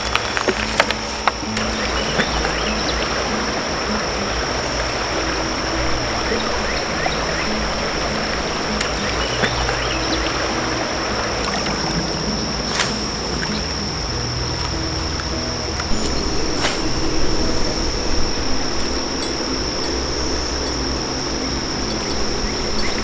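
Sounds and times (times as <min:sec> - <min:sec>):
cicadas droning: 0:00.0 - 0:23.0
creek water running: 0:00.0 - 0:23.0.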